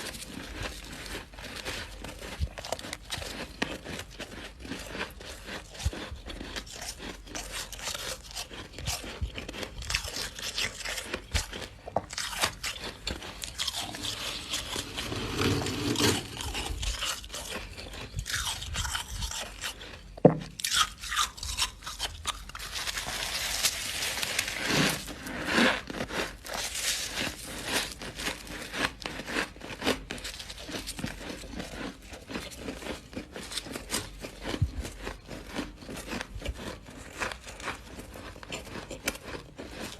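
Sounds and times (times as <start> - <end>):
biting and chewing frost: 0.0 - 39.9
scraping: 13.6 - 16.9.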